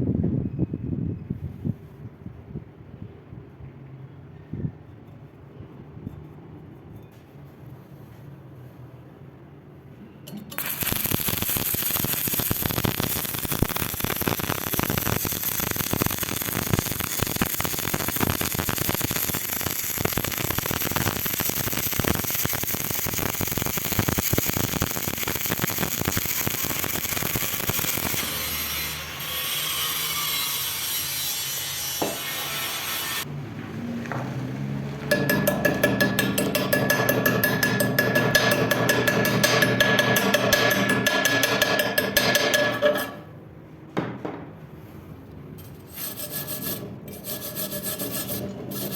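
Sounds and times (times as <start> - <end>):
arc welding crackle: 10.3 - 33.3.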